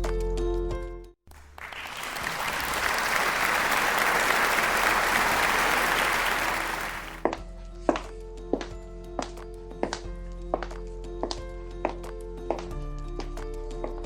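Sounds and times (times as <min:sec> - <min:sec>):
applause: 0:01.3 - 0:07.3.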